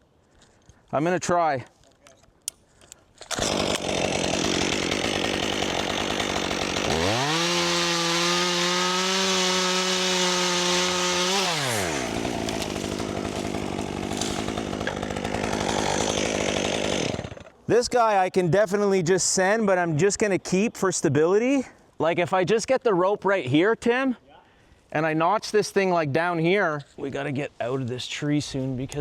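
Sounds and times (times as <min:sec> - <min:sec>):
chainsaw revving: 0:03.3 - 0:17.5.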